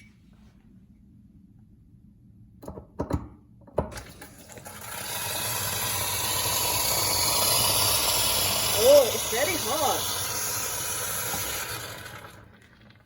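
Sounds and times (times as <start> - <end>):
boiling water rushing with a hiss: 4.3 - 13.0.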